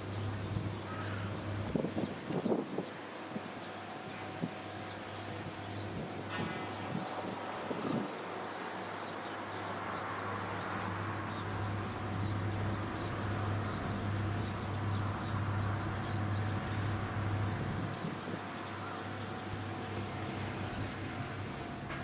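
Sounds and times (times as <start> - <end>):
harvester engine humming: 0.0 - 2.6, 9.7 - 22.0.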